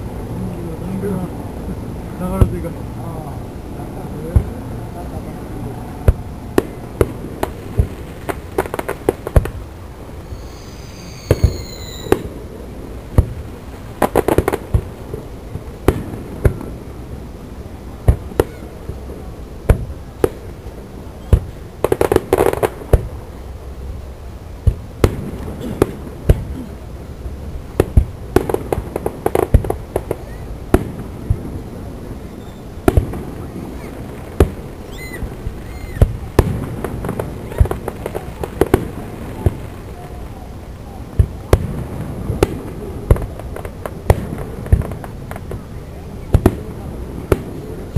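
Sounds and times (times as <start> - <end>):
rapid firework crackling: 4.0 - 47.9
firework shells bursting: 6.1 - 9.6, 10.3 - 12.5
firework whistling: 6.2 - 12.6, 27.8 - 31.5, 32.1 - 40.2.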